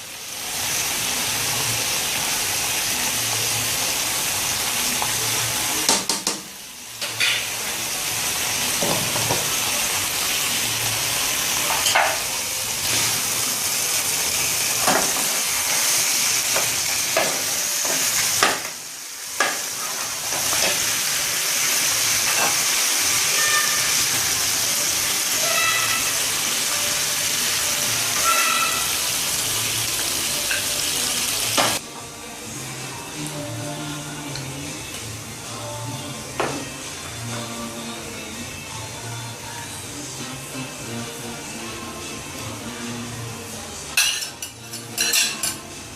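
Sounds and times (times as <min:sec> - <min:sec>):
food sizzling in hot oil: 0:00.0 - 0:31.8.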